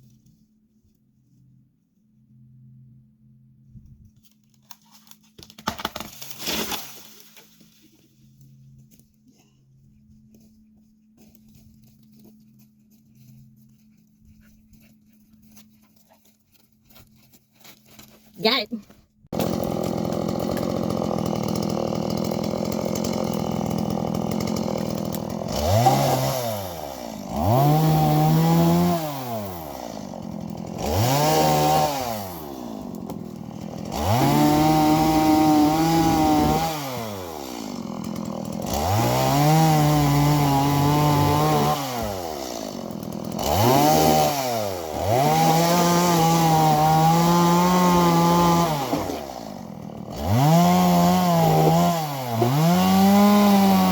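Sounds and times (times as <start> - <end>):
chainsaw engine revving: 19.4 - 53.9.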